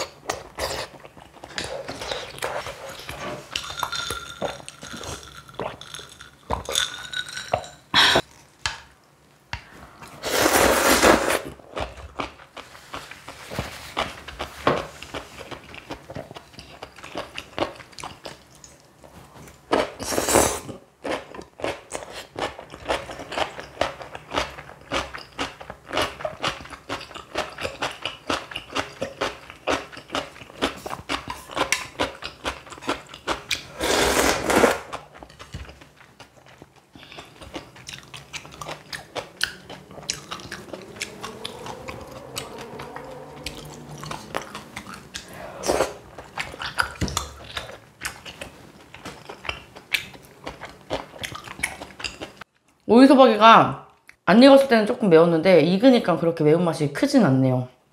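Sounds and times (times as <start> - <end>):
crunching and chewing: 21.0 - 52.8.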